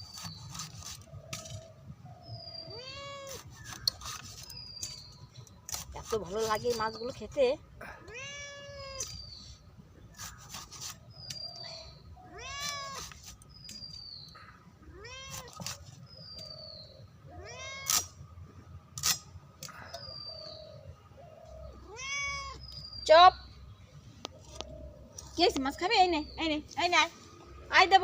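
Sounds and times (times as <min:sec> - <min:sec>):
cat meowing: 0:02.6 - 0:03.4, 0:08.0 - 0:09.2, 0:12.2 - 0:13.1, 0:14.9 - 0:15.7, 0:17.3 - 0:18.0, 0:21.8 - 0:22.6.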